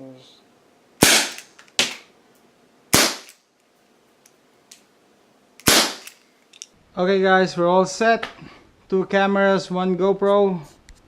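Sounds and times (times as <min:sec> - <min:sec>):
air pistol shots cracking: 0:01.0 - 0:02.1, 0:02.9 - 0:03.4, 0:05.6 - 0:06.3.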